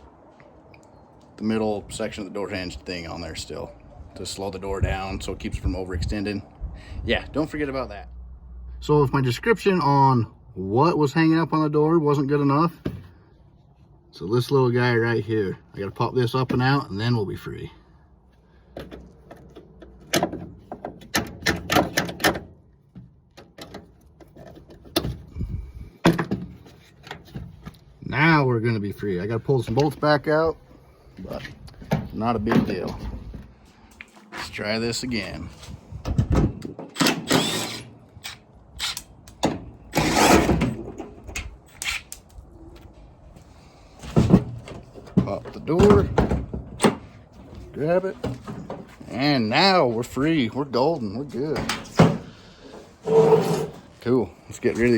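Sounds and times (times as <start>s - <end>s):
rattling metal scrape: 52.7s - 54.0s.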